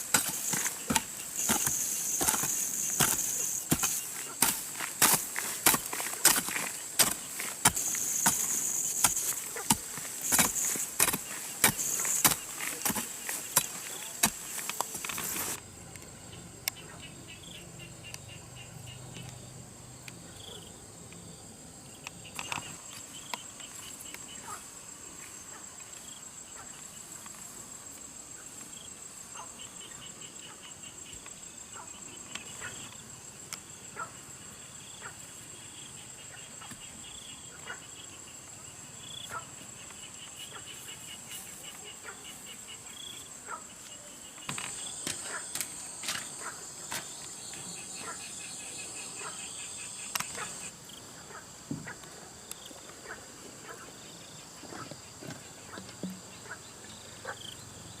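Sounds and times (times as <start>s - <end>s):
hand tool chopping grass and soil: 0.0s - 15.6s, 44.5s - 47.2s
high-pitched insect trill: 0.0s - 16.6s
insects chirping: 0.0s - 58.0s.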